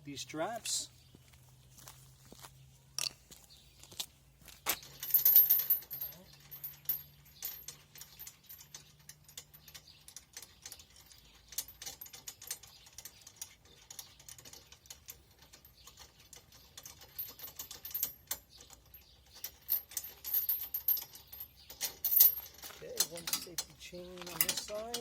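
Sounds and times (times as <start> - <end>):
metal chain clinking: 3.0 - 3.3, 4.6 - 25.0.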